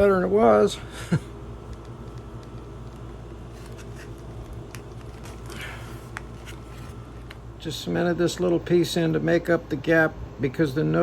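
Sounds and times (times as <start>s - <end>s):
steady low hum: 0.0s - 11.0s
faint small clicks and taps: 1.7s - 3.0s.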